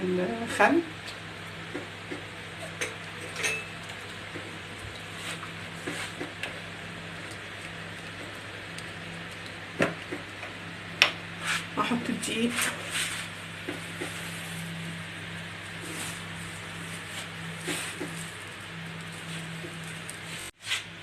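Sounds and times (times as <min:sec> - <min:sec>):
utensils clinking on dishes: 0:02.6 - 0:03.8.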